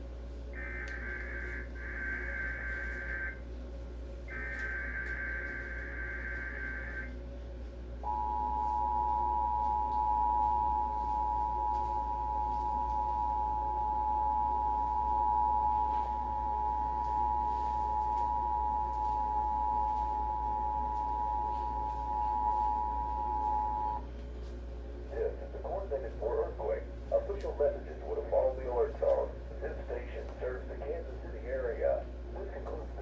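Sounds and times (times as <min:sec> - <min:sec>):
harsh digital data warble: 0:00.6 - 0:03.5, 0:04.3 - 0:07.2
two-tone attention signal: 0:08.0 - 0:24.0.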